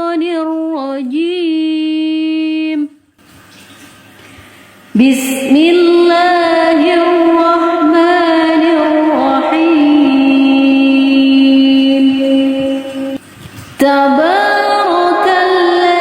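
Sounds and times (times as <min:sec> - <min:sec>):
person chanting melodic recitation: 0:05.0 - 0:13.2, 0:13.8 - 0:16.0.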